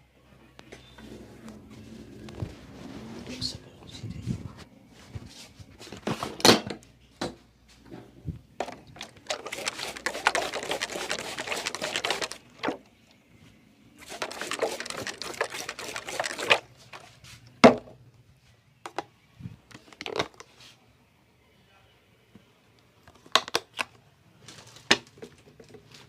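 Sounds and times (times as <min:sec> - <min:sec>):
fingers rustling through hair: 0:01.7 - 0:04.6, 0:09.0 - 0:12.8, 0:14.0 - 0:17.4.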